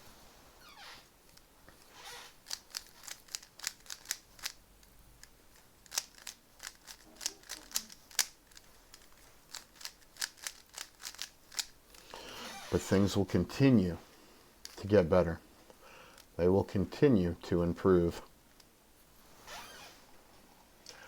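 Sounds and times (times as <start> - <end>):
puzzle cube clicking as twisted: 2.3 - 11.8.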